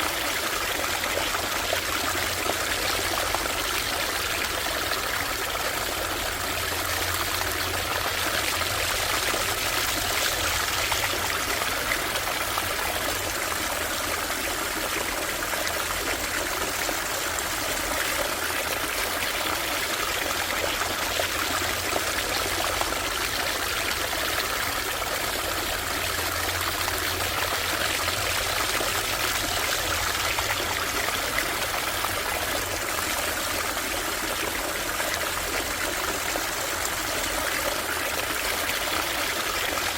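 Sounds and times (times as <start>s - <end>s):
brook water trickling: 0.0s - 39.9s.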